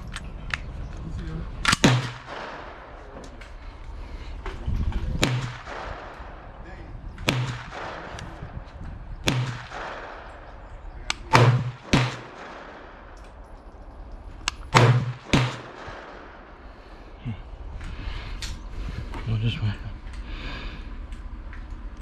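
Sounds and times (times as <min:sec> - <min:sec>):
gunshots with echoing tails: 0:01.6 - 0:03.2, 0:05.1 - 0:17.1
faint distant gunshots: 0:01.7 - 0:03.2, 0:05.0 - 0:13.2, 0:14.6 - 0:16.9.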